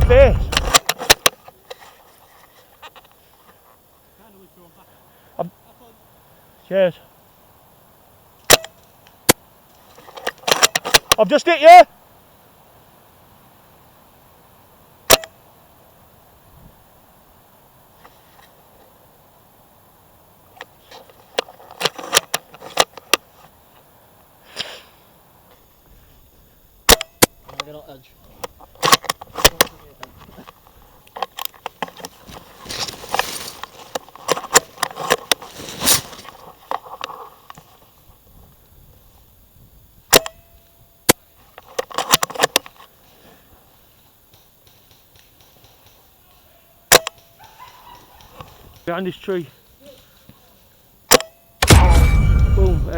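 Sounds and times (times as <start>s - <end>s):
rifle mechanism clicks and clatter: 0.5s - 1.8s, 41.6s - 42.9s
person sniffing: 24.4s - 25.0s
handling clicks and crackles: 28.4s - 37.8s
airsoft rifle shot with metallic ring: 40.1s - 40.4s, 51.1s - 52.9s.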